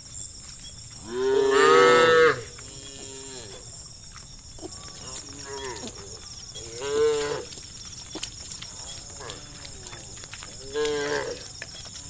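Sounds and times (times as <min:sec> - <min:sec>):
cattle mooing: 0:01.0 - 0:03.7, 0:04.6 - 0:07.6, 0:08.8 - 0:11.4.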